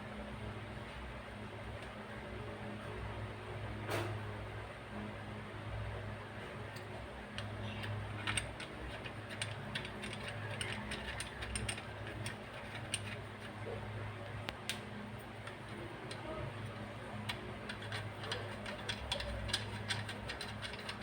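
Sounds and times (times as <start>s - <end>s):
ratchet clicking: 7.4s - 13.6s, 16.1s - 21.0s.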